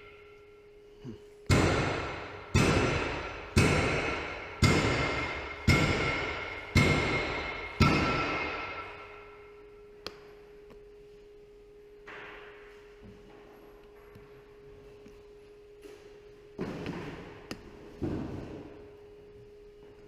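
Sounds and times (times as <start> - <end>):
ringing strikes: 0.0 - 10.5
faint steady hum: 0.0 - 20.0.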